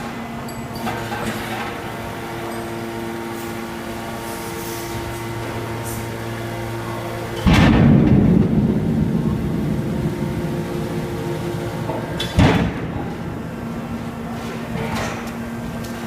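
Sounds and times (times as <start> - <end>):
baler machine humming: 1.6 - 16.0
sharp bang: 7.4 - 13.1
loud metal crash: 7.4 - 13.4.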